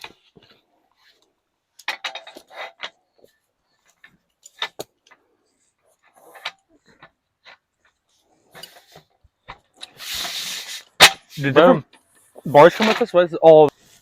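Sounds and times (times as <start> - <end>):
metal camp table parts rattling: 1.7 - 10.4, 11.0 - 13.2.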